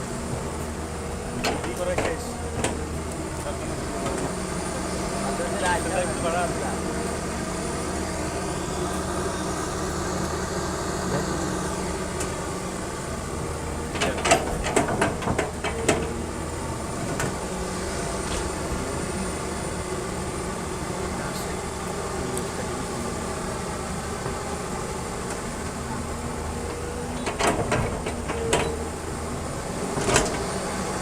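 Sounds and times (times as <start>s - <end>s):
excavator diesel engine running: 0.0s - 31.0s
knocks and clatters: 14.0s - 16.1s.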